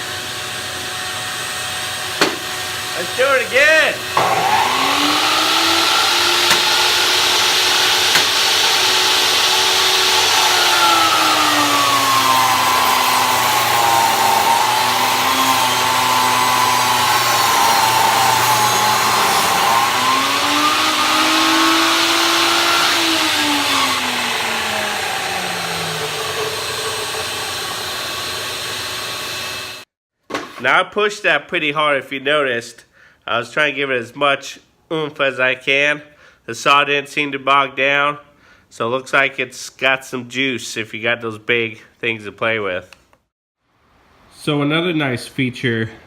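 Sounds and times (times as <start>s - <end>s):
vacuum running: 0.0s - 29.9s
table saw ripping a board: 0.2s - 29.8s.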